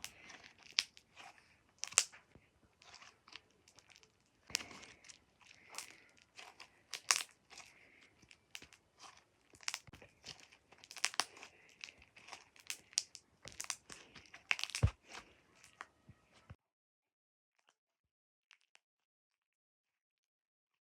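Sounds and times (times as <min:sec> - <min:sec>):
slime popping and crackling: 0:00.0 - 0:16.0.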